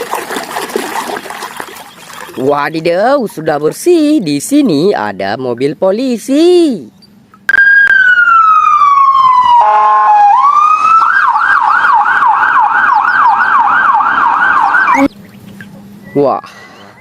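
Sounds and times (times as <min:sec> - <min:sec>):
police siren wail: 0:07.5 - 0:15.1
siren yelp warbling: 0:07.5 - 0:15.1
buzzing horn blast: 0:09.6 - 0:10.2.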